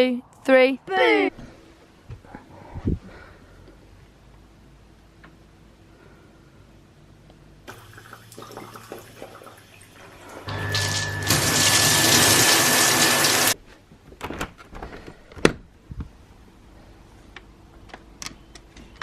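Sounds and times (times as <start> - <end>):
water running hard: 7.7 - 13.6.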